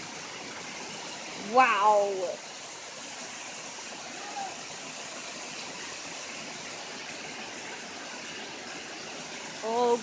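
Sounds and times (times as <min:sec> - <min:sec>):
heavy rain pouring: 0:00.0 - 0:10.0.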